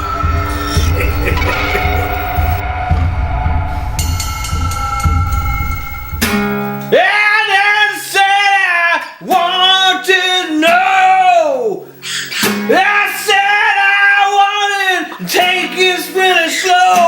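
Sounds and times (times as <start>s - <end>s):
low hum: 0.0s - 6.8s
strummed acoustic guitar: 6.1s - 7.3s, 9.2s - 17.0s.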